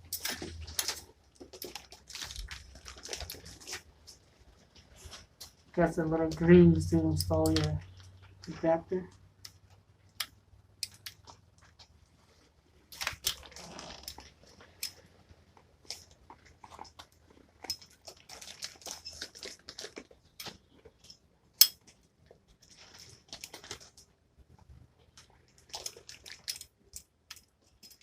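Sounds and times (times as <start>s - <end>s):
tool parts clicking and tapping: 20.4s - 21.9s, 26.5s - 28.0s.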